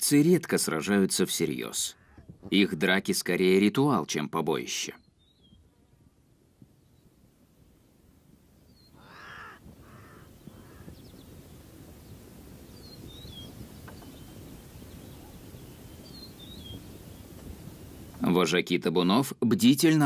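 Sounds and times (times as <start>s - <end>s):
faint high bird chirps: 5.0s - 5.9s, 12.0s - 17.3s
harsh animal calls: 9.0s - 10.9s.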